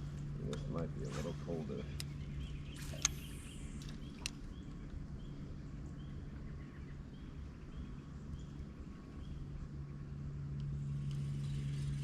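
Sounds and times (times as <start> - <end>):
steady low hum: 0.0 - 12.0
bird chirping: 1.5 - 9.5.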